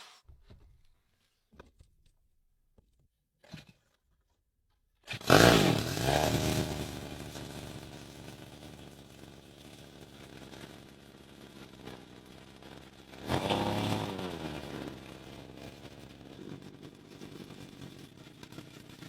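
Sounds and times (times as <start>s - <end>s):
chainsaw engine starting and running: 5.0s - 19.0s.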